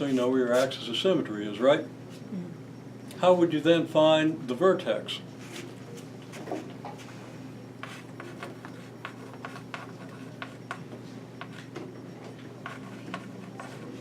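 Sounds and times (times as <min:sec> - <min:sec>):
low electrical hum: 0:00.0 - 0:14.0
pen scratching on paper: 0:07.8 - 0:10.8, 0:12.6 - 0:14.0.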